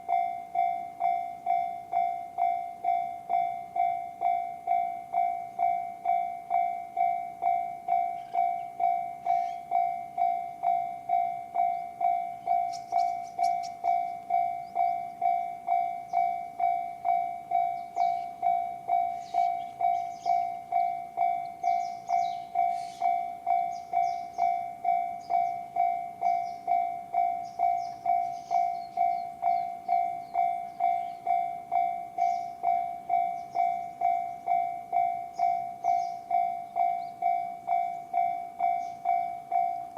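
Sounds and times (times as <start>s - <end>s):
level-crossing electronic bell: 0.0s - 39.9s.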